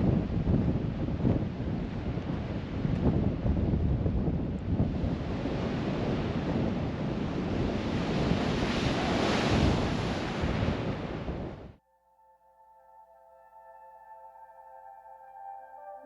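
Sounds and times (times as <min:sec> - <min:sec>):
wind buffeting microphone: 0:00.0 - 0:11.8
waves crashing on rocky shore: 0:04.9 - 0:11.5.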